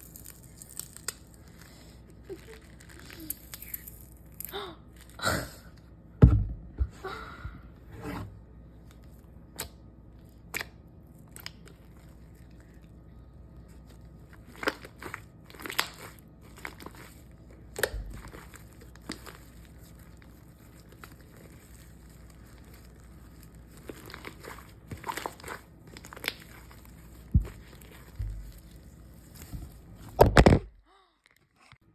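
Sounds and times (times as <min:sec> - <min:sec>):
slime and plastic containers crinkling: 0:00.0 - 0:05.2, 0:08.8 - 0:31.7
soft thumps: 0:06.2 - 0:07.0.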